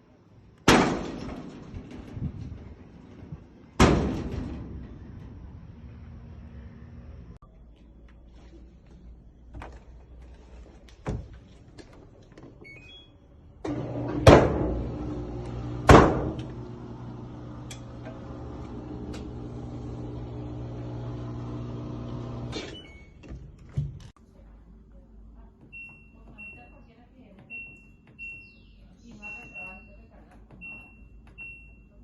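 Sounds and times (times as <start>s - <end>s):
loud clunks: 0.7s - 5.5s, 13.7s - 20.3s
microwave oven humming: 13.6s - 23.0s
keypad beeps: 25.7s - 26.8s, 27.5s - 30.0s, 30.6s - 32.0s.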